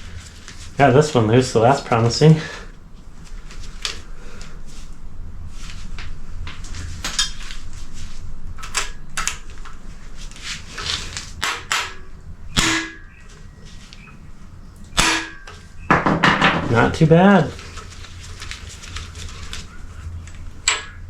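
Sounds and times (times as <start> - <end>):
metal tools clicking and clanking: 7.1 - 7.4, 8.6 - 9.8, 20.3 - 21.0
ringing metal strikes: 11.4 - 13.3, 15.0 - 16.8.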